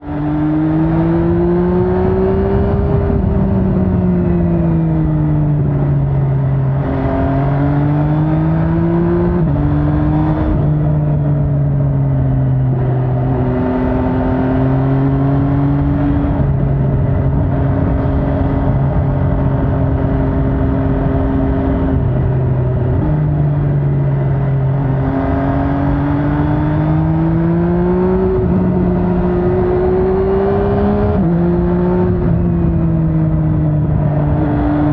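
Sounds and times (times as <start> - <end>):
motorcycle engine shifting gears: 0.0 - 34.9.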